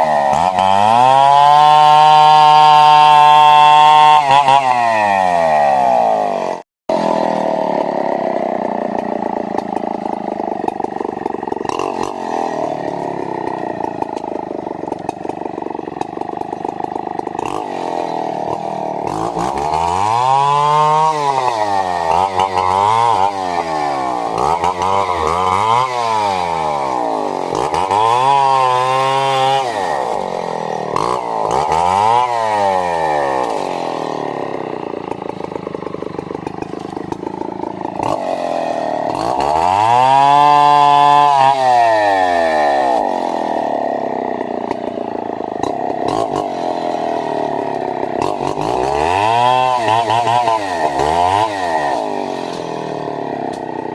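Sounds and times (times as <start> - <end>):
chainsaw revving cutting wood: 0.0 - 53.9.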